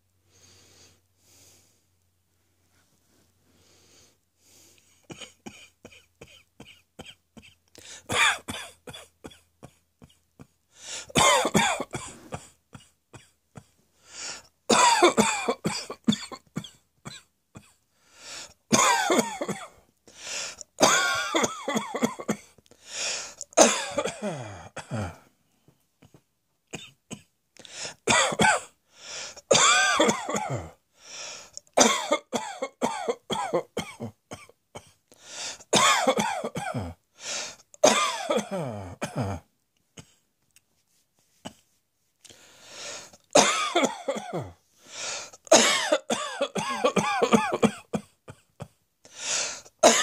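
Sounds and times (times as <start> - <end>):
person coughing: 5.0 - 13.8, 14.7 - 17.8, 18.7 - 19.8, 20.8 - 22.6, 23.6 - 25.3, 26.8 - 28.8, 29.4 - 30.8, 31.7 - 35.0, 35.7 - 37.0, 37.8 - 40.2, 43.2 - 44.6, 45.2 - 50.0.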